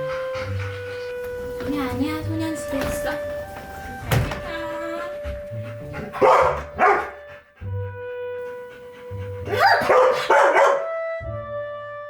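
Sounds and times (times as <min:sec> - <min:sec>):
background music: 0:00.0 - 0:12.0
dog barking: 0:06.2 - 0:07.2, 0:09.5 - 0:10.9.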